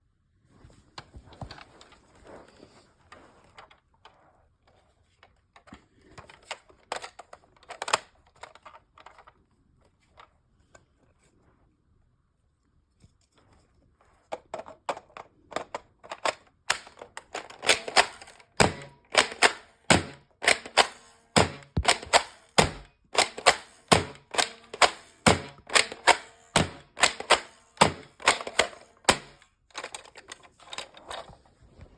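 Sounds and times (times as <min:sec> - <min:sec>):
plastic clicks of toy blaster: 0:06.2 - 0:09.3, 0:14.6 - 0:31.0
sharp mechanical clacks: 0:16.7 - 0:30.1.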